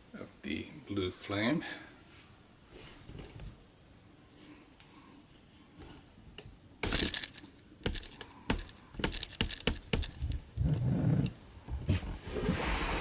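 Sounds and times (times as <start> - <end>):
sharp clicks and knocks: 6.4 - 10.5.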